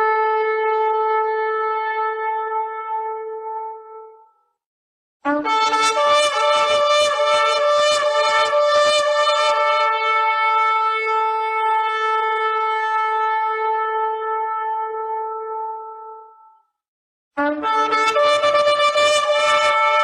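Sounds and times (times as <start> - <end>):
shofar blasts: 5.3 - 15.4, 17.4 - 20.0.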